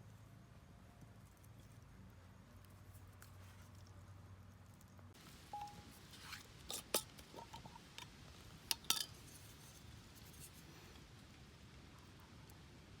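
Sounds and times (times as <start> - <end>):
utensils clinking on cookware: 6.7 - 7.7, 8.7 - 9.4.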